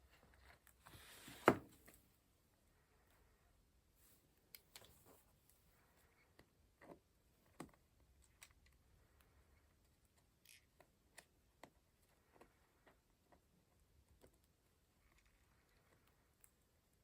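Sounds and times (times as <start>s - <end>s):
paper and craft materials handled: 0.1s - 2.0s.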